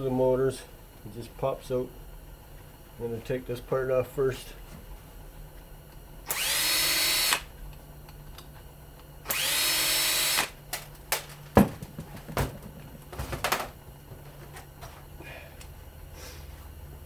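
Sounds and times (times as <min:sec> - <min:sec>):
power drill whining: 0:06.3 - 0:07.5, 0:09.2 - 0:10.6.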